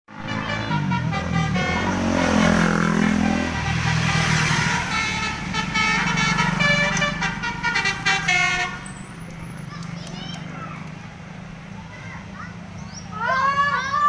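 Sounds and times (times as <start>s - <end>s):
bus horn playing a melody: 0.1s - 9.0s
bus engine running: 0.1s - 14.0s.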